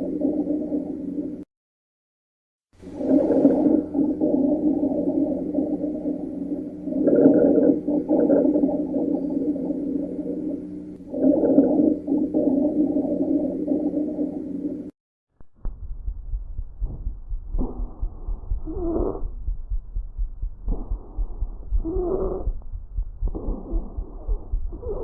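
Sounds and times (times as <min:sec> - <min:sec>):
wheezing breath sounds: 0:21.0 - 0:22.6.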